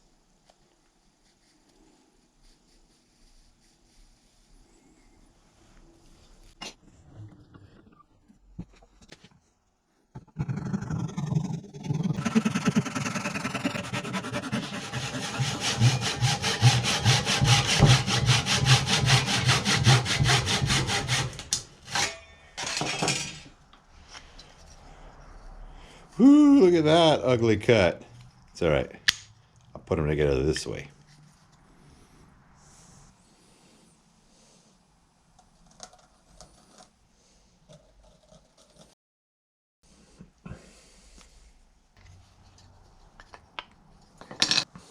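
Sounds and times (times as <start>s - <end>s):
hand saw cutting wood: 10.7s - 22.2s.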